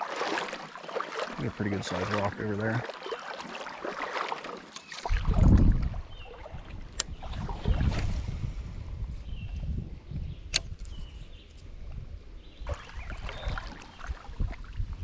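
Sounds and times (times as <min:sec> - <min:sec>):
water splashing around wading legs: 0:00.0 - 0:08.3, 0:12.6 - 0:15.0
sharp click: 0:10.5 - 0:11.1.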